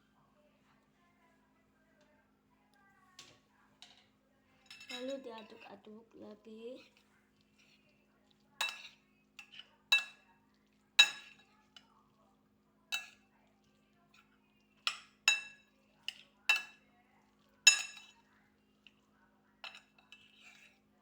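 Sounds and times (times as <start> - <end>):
cutlery clinking against a dish: 3.2 - 5.8, 8.6 - 10.4, 11.0 - 11.9, 12.9 - 13.3, 14.1 - 20.9.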